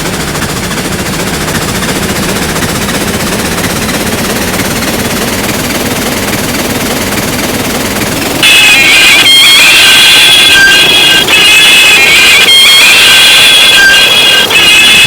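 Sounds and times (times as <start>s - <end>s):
train rattling: 0.0s - 15.0s
train horn: 8.4s - 15.0s.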